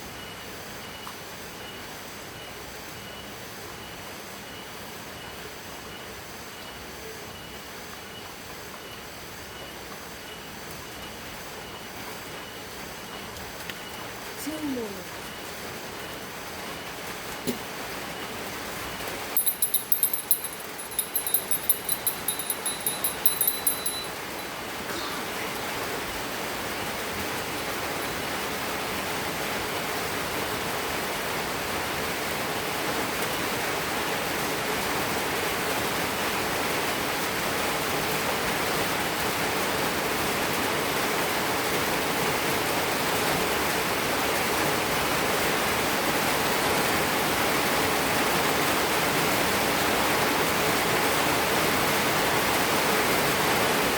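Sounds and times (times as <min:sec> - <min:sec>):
rain falling: 0:06.2 - 0:53.9
high ringing sound: 0:19.4 - 0:24.5.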